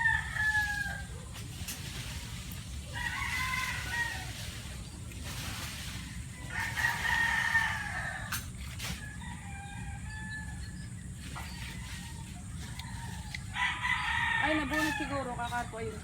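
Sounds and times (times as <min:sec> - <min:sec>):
rooster crowing: 0:00.0 - 0:01.3, 0:02.9 - 0:04.6, 0:06.0 - 0:10.9, 0:11.6 - 0:15.8.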